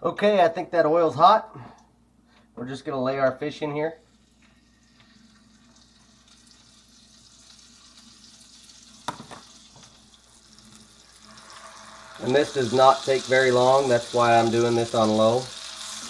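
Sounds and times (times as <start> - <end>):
fish sizzling in oil: 4.1 - 16.0.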